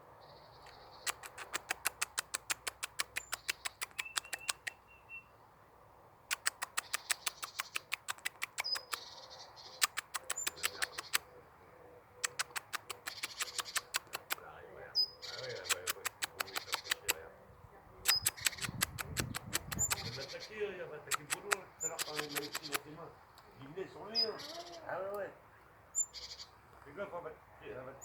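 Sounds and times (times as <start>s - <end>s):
faint high bird chirps: 0.2s - 1.6s, 3.2s - 5.4s, 6.3s - 7.8s, 8.6s - 14.0s, 14.9s - 17.0s, 23.6s - 26.6s
birds ticking: 0.3s - 5.4s, 6.3s - 17.2s, 18.1s - 25.3s, 25.9s - 27.1s.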